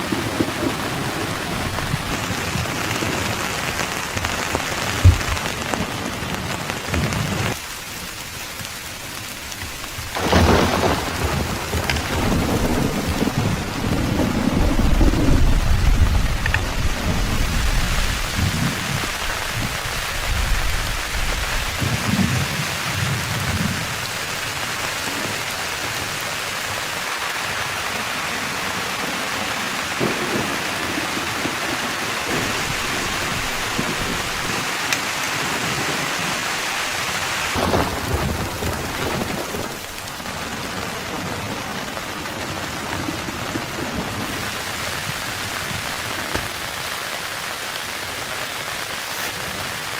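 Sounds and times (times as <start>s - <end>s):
low thunder rumble: 0.0s - 7.6s, 10.1s - 24.1s, 28.6s - 36.2s, 37.6s - 46.7s
heavy rain pouring: 0.0s - 49.9s.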